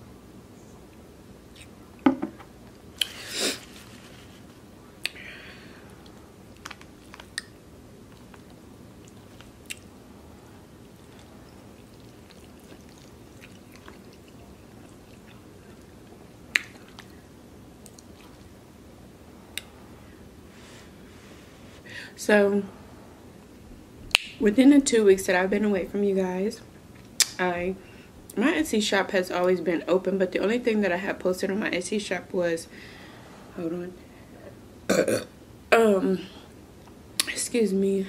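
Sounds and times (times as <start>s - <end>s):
chewing and mouth smacks: 6.0s - 9.9s, 10.8s - 17.2s, 17.8s - 18.5s.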